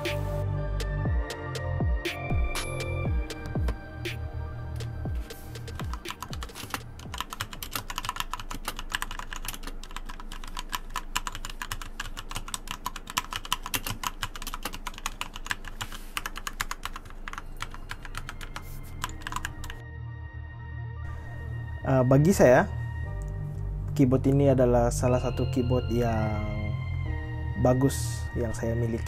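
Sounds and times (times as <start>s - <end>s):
fast mechanical keyboard typing: 5.5s - 19.8s.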